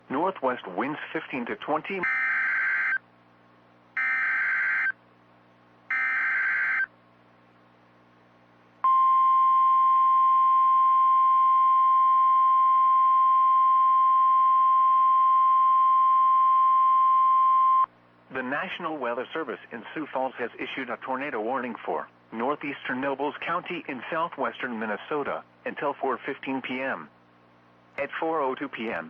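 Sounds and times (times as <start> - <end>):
steady warning alarm tone: 2.0 - 3.0, 4.0 - 5.0, 5.9 - 6.9.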